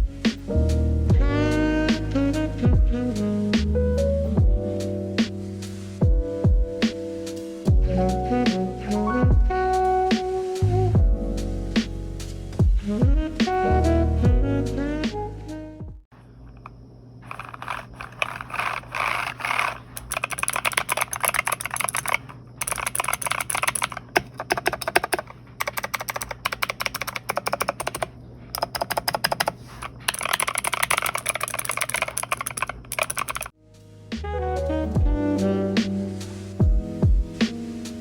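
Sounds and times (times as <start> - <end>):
mechanical keyboard typing: 17.3 - 33.6.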